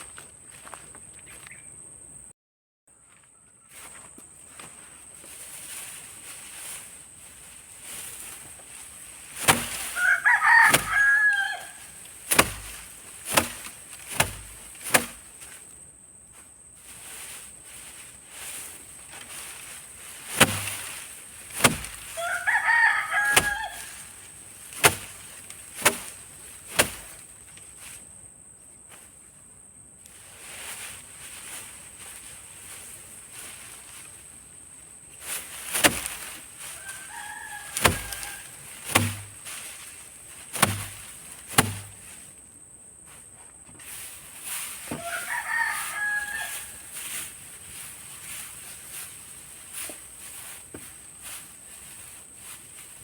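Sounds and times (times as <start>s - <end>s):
sharp knocks: 9.4s - 10.0s, 10.6s - 10.9s, 12.3s - 15.3s, 20.4s - 20.9s, 21.6s - 22.1s, 23.3s - 23.6s, 24.8s - 25.2s, 25.8s - 27.2s, 37.8s - 38.3s, 38.9s - 39.4s, 40.6s - 42.0s
rooster crowing: 9.8s - 12.6s, 21.9s - 24.2s, 36.6s - 39.4s, 44.9s - 46.9s.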